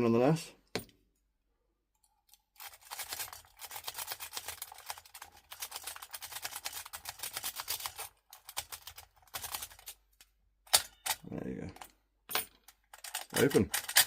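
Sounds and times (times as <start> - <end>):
lock pick raking pins: 10.7 - 14.0.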